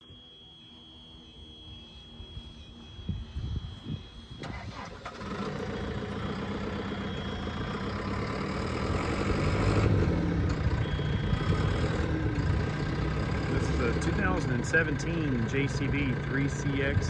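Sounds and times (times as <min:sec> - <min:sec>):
diesel engine starting and running: 0:04.3 - 0:17.0.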